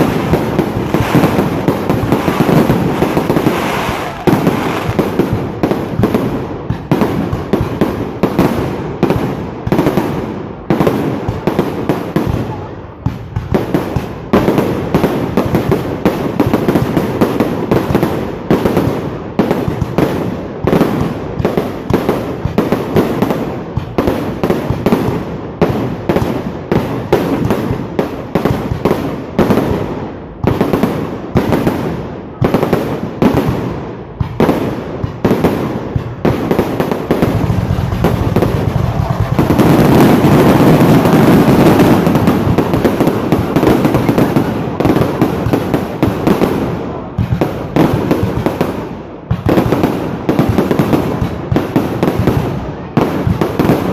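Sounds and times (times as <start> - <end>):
fireworks banging: 0.0 - 53.9.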